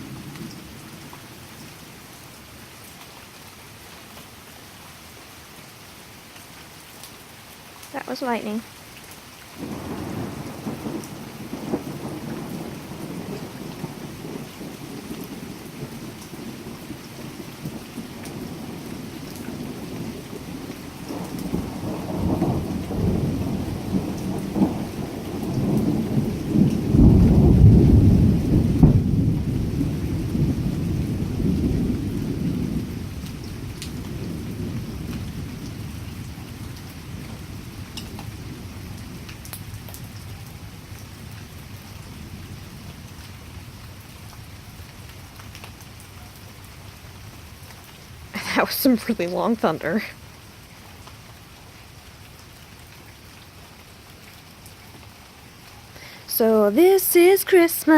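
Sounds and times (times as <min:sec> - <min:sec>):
rain hissing: 0:00.0 - 0:57.9
thunder rumbling: 0:09.6 - 0:44.0.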